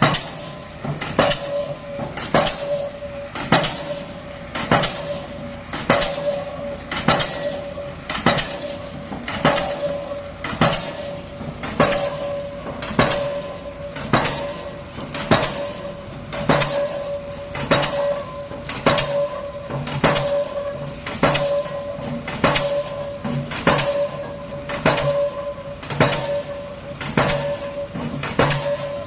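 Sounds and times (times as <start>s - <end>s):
hammer striking metal: 0.0s - 29.0s.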